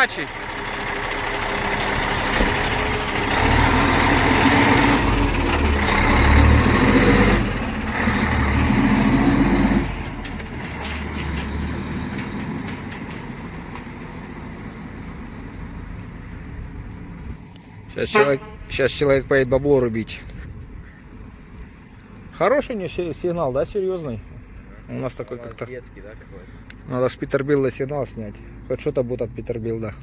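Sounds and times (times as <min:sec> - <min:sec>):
truck engine revving: 0:00.0 - 0:17.4
deep truck horn blast: 0:18.1 - 0:18.8.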